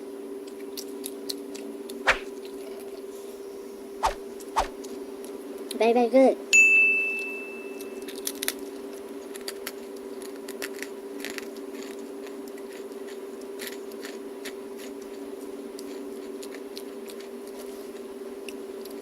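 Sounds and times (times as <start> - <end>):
steady low hum: 0.0 - 5.7
crunchy food being chewed: 0.3 - 3.1, 7.8 - 19.0.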